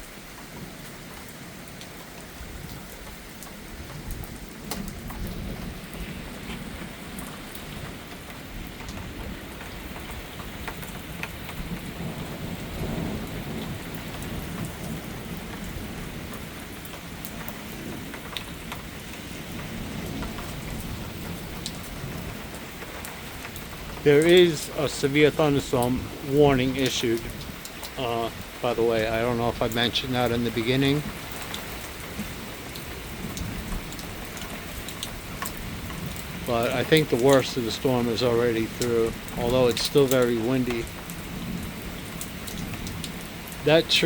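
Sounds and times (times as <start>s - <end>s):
rain falling: 0.0s - 44.0s
low thunder rumble: 3.6s - 31.4s.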